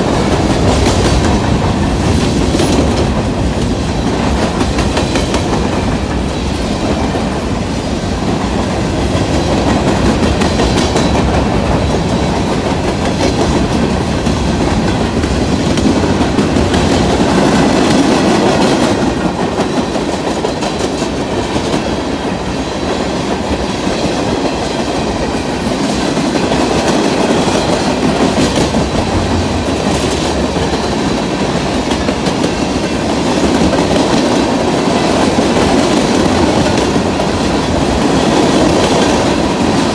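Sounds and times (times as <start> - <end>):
train wheels clattering over rails: 0.0 - 39.9.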